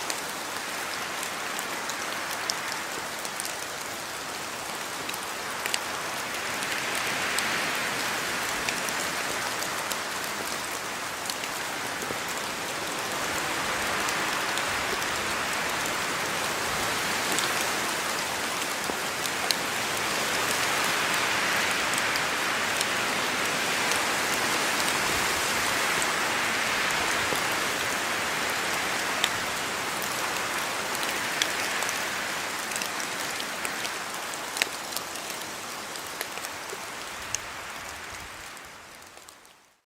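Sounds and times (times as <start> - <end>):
steady rain hiss: 0.0 - 39.8
raindrops ticking on surface: 26.9 - 39.8.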